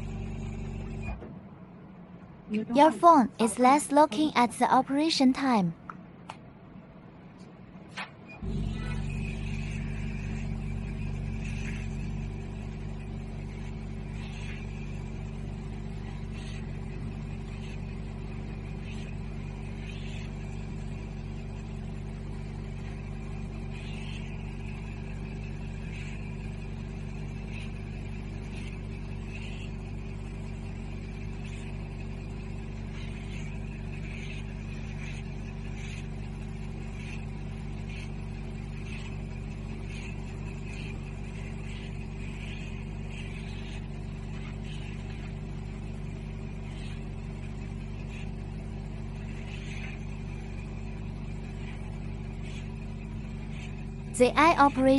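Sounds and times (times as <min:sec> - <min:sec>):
machine low hum: 0:00.0 - 0:54.9.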